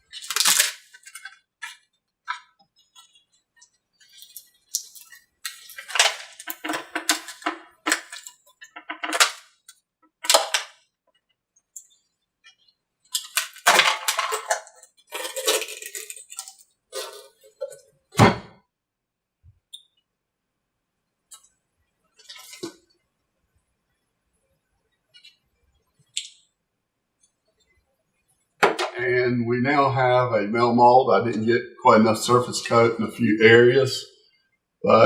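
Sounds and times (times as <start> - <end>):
laminate cracking and creaking: 0.0 - 10.8.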